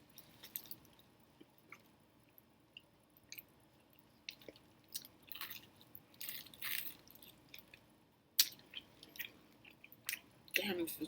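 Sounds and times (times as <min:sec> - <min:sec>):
person chewing food: 0:00.0 - 0:10.6.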